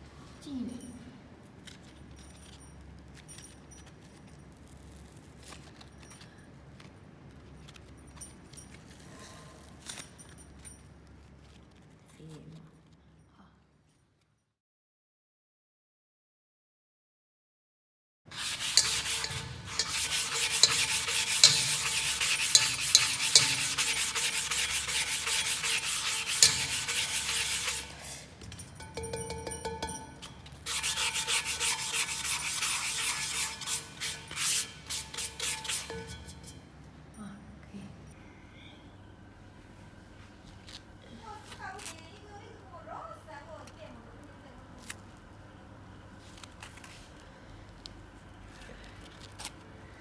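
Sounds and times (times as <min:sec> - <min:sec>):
sanding sponge rubbing metal: 0:18.3 - 0:36.6
metal wok clinking: 0:18.3 - 0:36.7.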